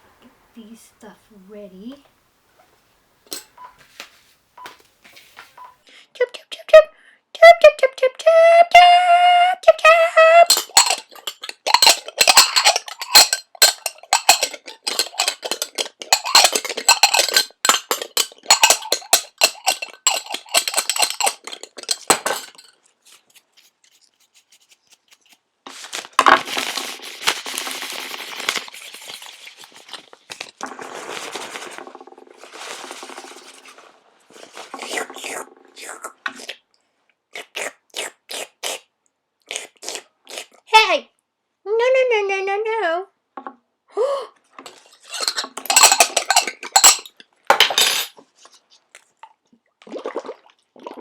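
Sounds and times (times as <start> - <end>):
spoon clinking on plates: 3.3 - 3.6, 10.4 - 22.8, 44.7 - 48.2
scratchy rustling noise: 3.8 - 5.6, 10.4 - 35.2.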